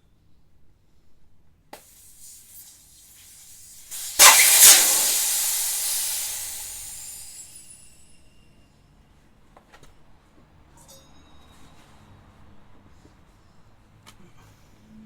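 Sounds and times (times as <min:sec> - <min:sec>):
air rushing out of tyre valve: 0:01.8 - 0:07.9.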